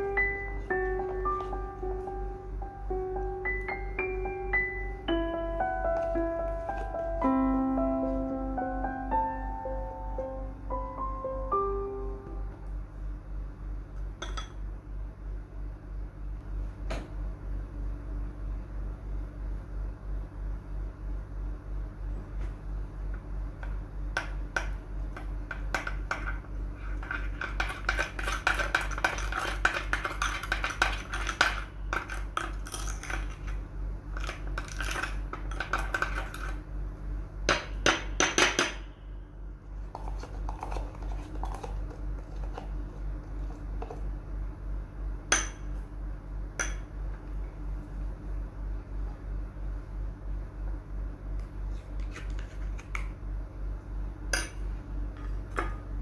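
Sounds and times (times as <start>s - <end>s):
spoon scraping a bowl: 40.0s - 42.7s.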